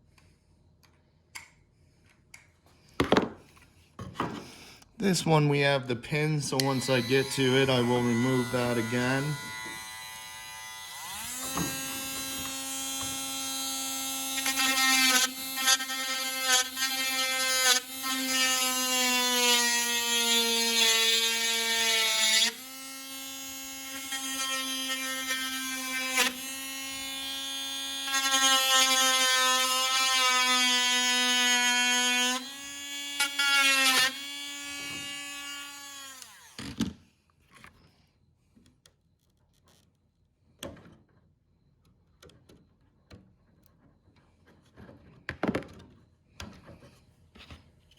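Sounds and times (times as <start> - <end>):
rotary tool drilling plastic: 6.6 - 37.0.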